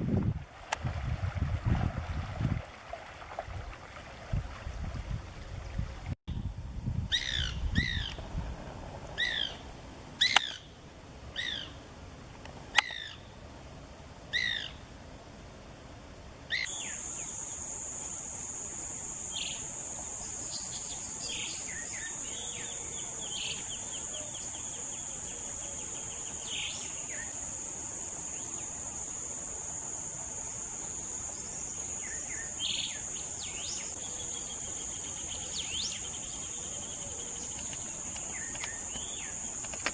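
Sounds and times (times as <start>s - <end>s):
high insect drone: 16.5s - 39.9s.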